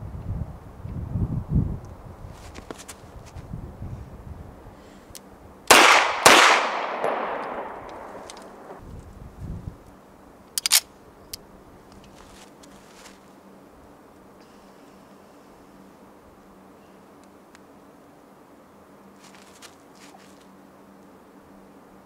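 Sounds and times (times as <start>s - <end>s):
pistol shots with echo: 5.7s - 8.8s.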